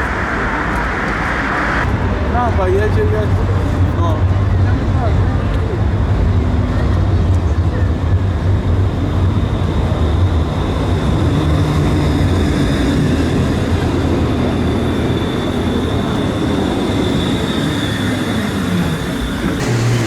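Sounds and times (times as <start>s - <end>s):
tram wheels rumbling on rails: 0.0s - 20.0s
tram motor tone falling: 13.0s - 20.0s
high thin whine: 19.6s - 20.0s.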